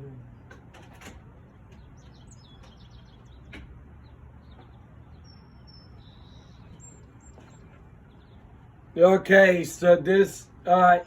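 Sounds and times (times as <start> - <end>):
birds chirping and whistling: 1.2 - 9.0.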